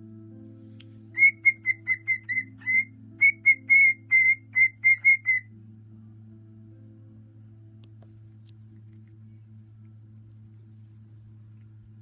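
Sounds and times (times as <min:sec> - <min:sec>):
cockatiel whistling: 0:01.2 - 0:05.5.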